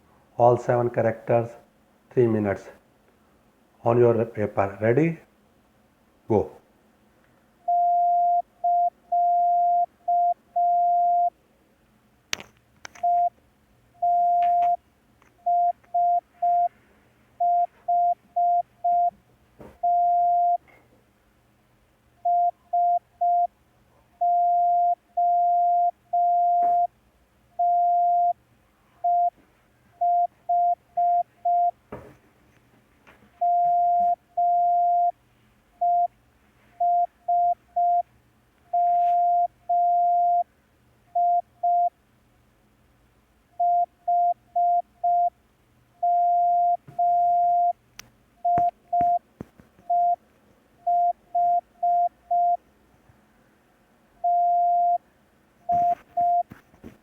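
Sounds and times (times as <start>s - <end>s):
morse code beeps: 7.7s - 11.3s, 13.0s - 13.3s, 14.0s - 14.8s, 15.4s - 16.7s, 17.4s - 19.2s, 19.8s - 20.6s, 22.3s - 23.5s, 24.2s - 26.9s, 27.6s - 28.4s, 29.0s - 29.4s, 30.0s - 31.8s, 33.4s - 35.2s, 35.8s - 36.1s, 36.8s - 38.1s, 38.7s - 40.4s, 41.2s - 41.9s, 43.6s - 45.3s, 46.0s - 47.8s, 48.4s - 49.2s, 49.9s - 50.2s, 50.8s - 52.6s, 54.2s - 55.0s, 55.7s - 56.5s.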